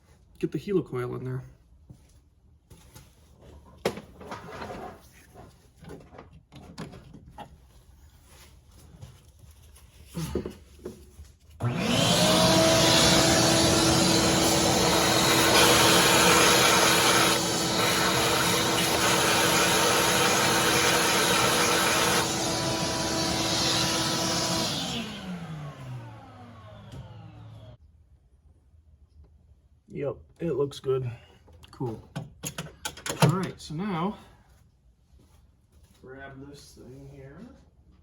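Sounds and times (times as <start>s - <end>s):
shop vac motor whine: 11.6s - 27.8s.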